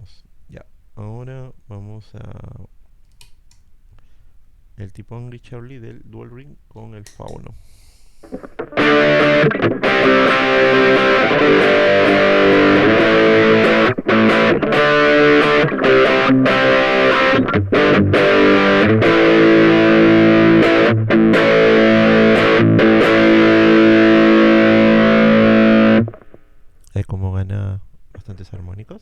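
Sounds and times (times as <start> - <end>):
distorted electric guitar: 8.2 - 26.7.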